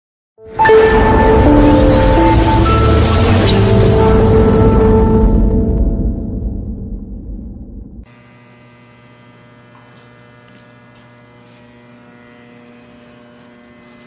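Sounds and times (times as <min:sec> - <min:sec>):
music: 0:00.4 - 0:08.1.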